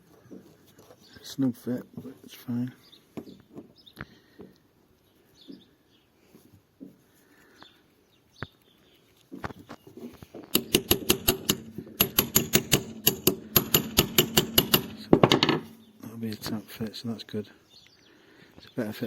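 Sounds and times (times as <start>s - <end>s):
hammer tapping on metal: 10.5s - 16.0s.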